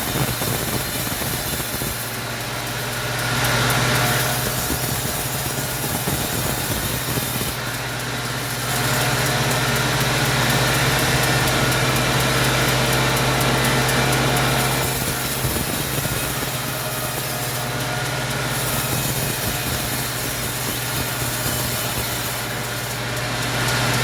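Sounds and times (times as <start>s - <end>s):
saw cutting through wood: 0.0s - 24.0s
sawmill engine running: 0.0s - 24.0s.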